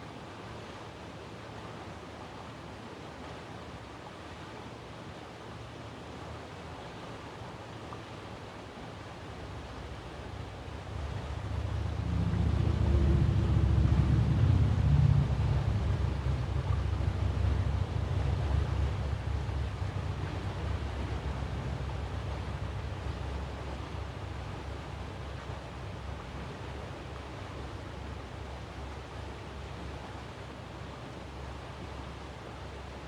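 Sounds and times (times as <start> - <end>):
outdoor background noise: 6.0 - 33.0
low rumble: 9.3 - 30.4.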